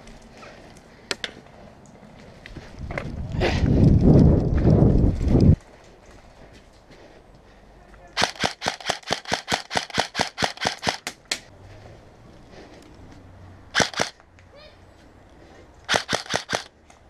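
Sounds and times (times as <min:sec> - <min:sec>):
airsoft rifle shots: 0:08.2 - 0:11.2, 0:13.7 - 0:14.2, 0:15.9 - 0:16.7.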